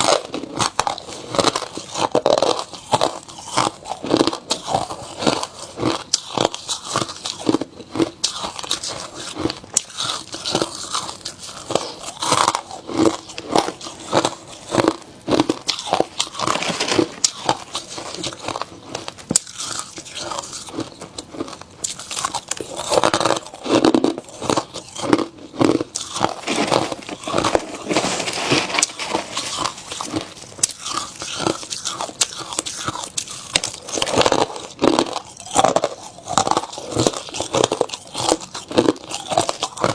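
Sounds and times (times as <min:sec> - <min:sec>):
person chewing ice: 0:00.0 - 0:39.9.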